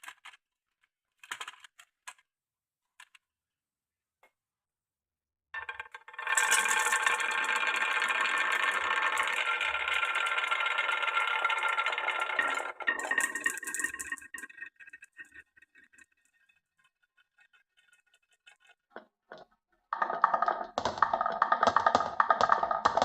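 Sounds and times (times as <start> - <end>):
glass marbles rattling on wooden run: 5.6 - 16.0, 19.4 - 23.0.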